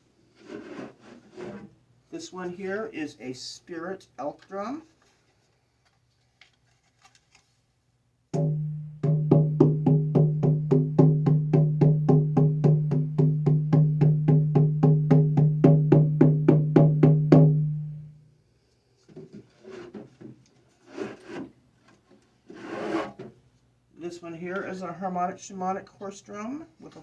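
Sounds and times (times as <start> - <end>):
frame drum beating: 8.4 - 18.1.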